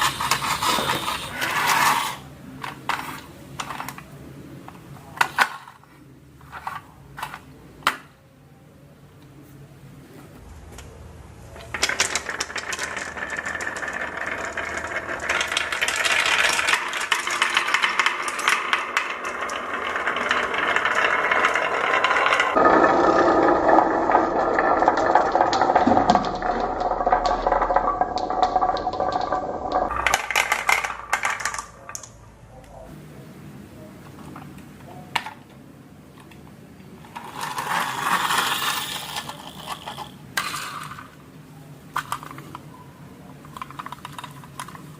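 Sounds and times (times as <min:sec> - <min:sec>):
marbles rattling down wooden run: 0:11.7 - 0:32.1, 0:37.1 - 0:41.2.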